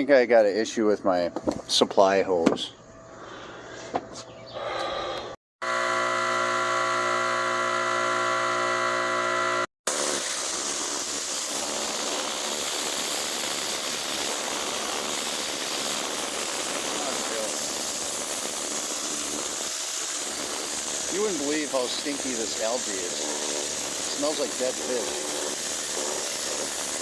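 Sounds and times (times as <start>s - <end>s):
pressure washer motor whine: 5.6s - 27.0s
high-pressure water spray hiss: 9.9s - 27.0s.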